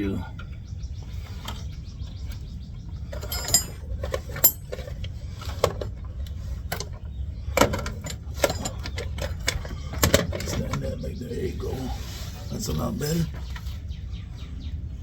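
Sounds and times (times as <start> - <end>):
metal tools clinking: 3.1 - 6.0, 7.6 - 10.7.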